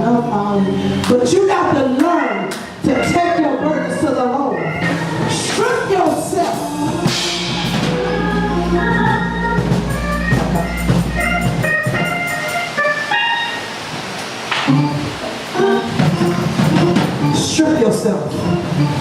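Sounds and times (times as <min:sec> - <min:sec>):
church band music: 0:00.0 - 0:19.0
drums: 0:04.8 - 0:13.1, 0:13.8 - 0:19.0.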